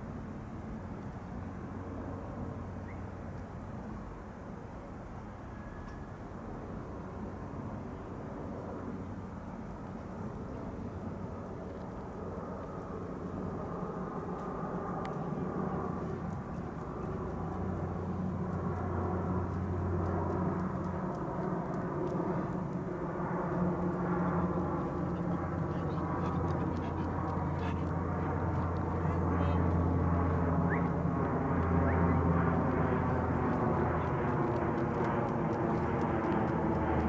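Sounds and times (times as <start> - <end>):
turboprop propeller hum: 11.0 - 37.0.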